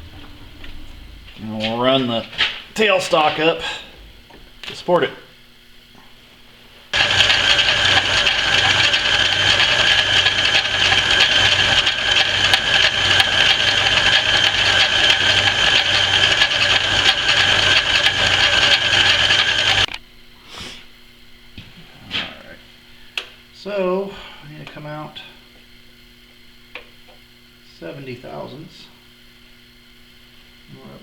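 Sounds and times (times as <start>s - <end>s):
metal lathe whirring: 7.0s - 19.9s.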